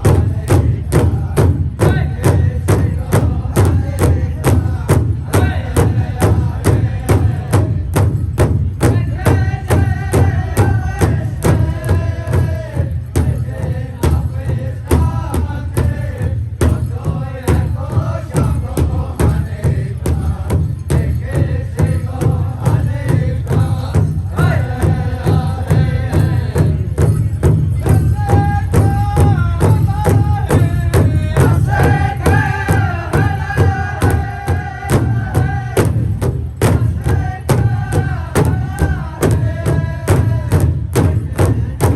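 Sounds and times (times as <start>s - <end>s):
fast beat on big drum: 0.0s - 41.9s
singers chanting in high voices: 27.8s - 36.0s, 36.6s - 41.9s.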